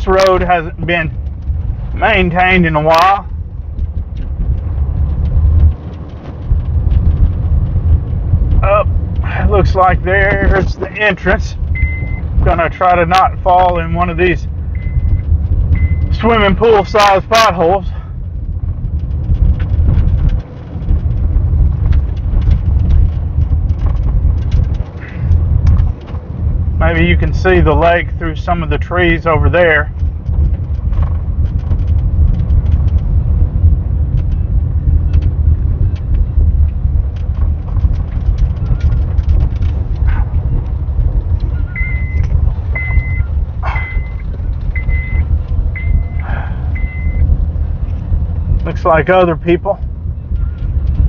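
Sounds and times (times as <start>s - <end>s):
car rumbling over rough road: 0.0s - 51.0s
high electronic beep: 11.8s - 12.2s, 14.8s - 15.2s, 15.8s - 16.1s, 41.6s - 44.2s, 44.8s - 45.2s, 45.8s - 46.2s, 46.8s - 47.2s
small clicks and crunches: 18.5s - 26.4s.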